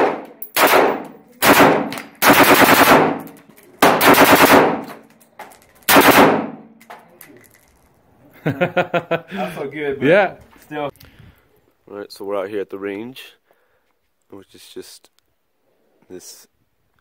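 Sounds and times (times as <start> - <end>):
rapid burst of gunfire: 0.0 - 3.2, 3.8 - 4.8, 5.9 - 6.5
gunshots: 0.0 - 5.0, 5.9 - 6.7.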